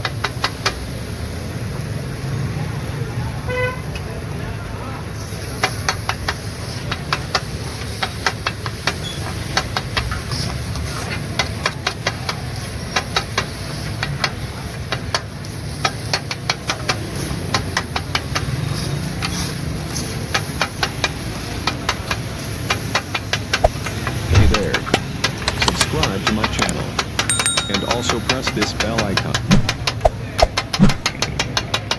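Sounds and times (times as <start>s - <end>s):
utensils clinking on cookware: 27.3s - 30.0s.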